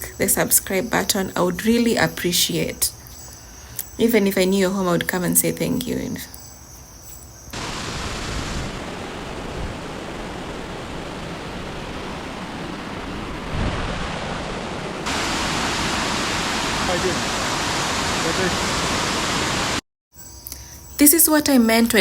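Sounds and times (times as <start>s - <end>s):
waterfall roaring over rocks: 7.6s - 19.8s.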